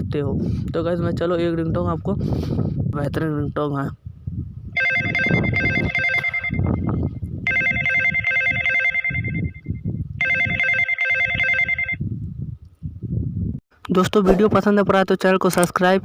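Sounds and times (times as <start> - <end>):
electronic phone ringtone: 4.8 - 12.0.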